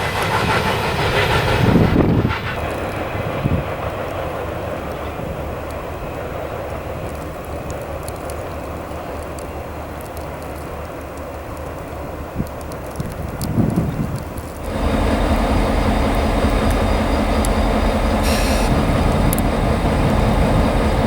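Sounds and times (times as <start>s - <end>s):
train running past: 0.0s - 10.4s, 14.4s - 21.0s
low engine hum: 14.4s - 21.0s.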